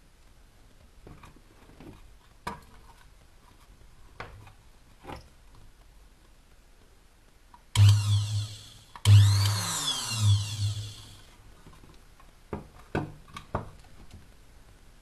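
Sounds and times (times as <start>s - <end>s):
small drill motor whining: 7.8s - 11.3s.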